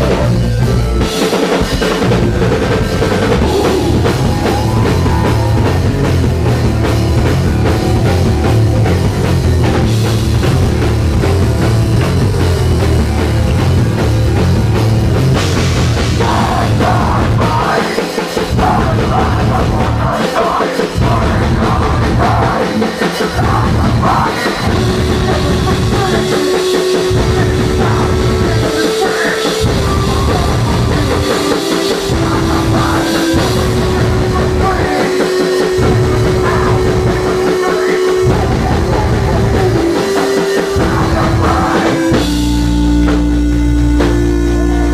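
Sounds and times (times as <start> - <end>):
heavy metal band playing: 0.0 - 44.9
steady held note: 1.9 - 10.6, 24.6 - 44.9.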